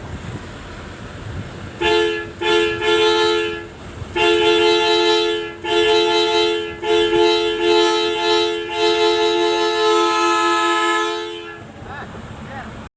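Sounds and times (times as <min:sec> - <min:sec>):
two-note bus horn blasts: 0:01.7 - 0:11.7.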